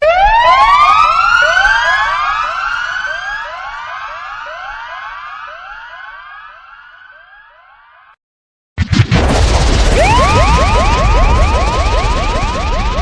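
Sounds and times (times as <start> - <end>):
electronic siren effect: 8.8 - 13.0.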